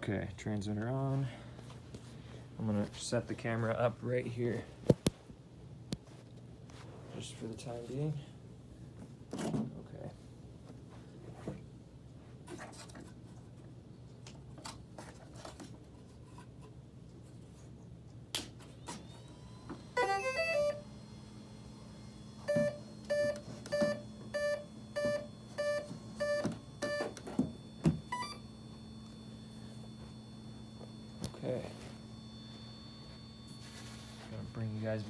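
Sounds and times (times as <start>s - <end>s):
motor startup beeps: 19.2s - 35.0s.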